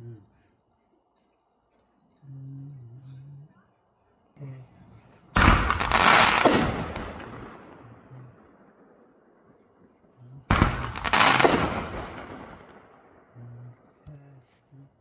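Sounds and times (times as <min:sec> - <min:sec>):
fireworks bang and crackle: 0:05.4 - 0:08.0, 0:10.4 - 0:13.2.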